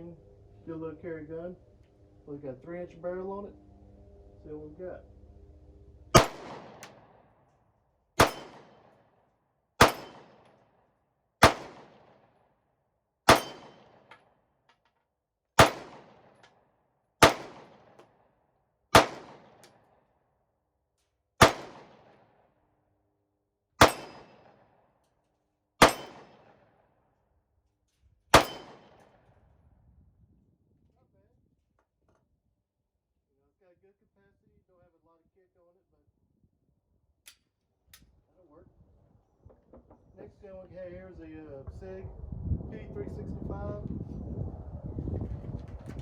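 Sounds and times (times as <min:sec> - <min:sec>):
pistol shots with echo: 0:06.1 - 0:07.2, 0:08.2 - 0:09.0, 0:09.8 - 0:10.6, 0:11.4 - 0:12.3, 0:13.3 - 0:14.1, 0:15.6 - 0:16.4, 0:17.2 - 0:18.0, 0:18.9 - 0:19.7, 0:21.4 - 0:22.3, 0:23.8 - 0:24.6, 0:25.8 - 0:26.6, 0:28.3 - 0:29.1.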